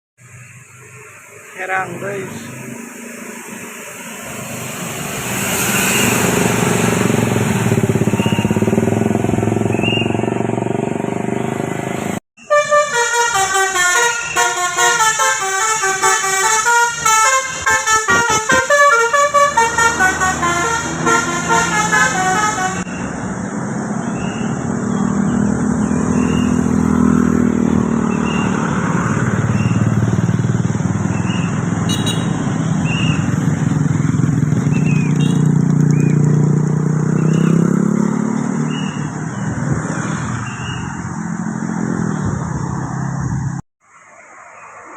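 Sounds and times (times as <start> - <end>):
bus engine: 0.2 - 44.9
traffic noise: 0.2 - 44.9
musical bus horn tune: 12.4 - 22.9, 31.9 - 32.4.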